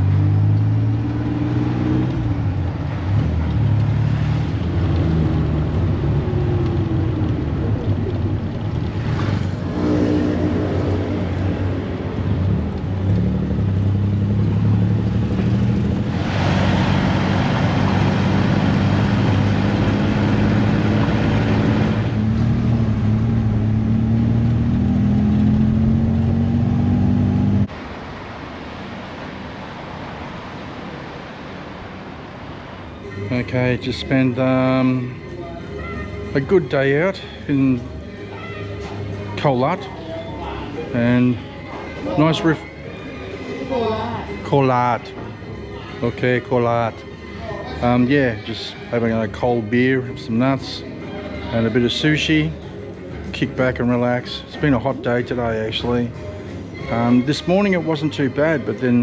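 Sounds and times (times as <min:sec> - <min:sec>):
rushing noise: 0:04.0 - 0:35.2
vehicle engine running: 0:12.1 - 0:27.7.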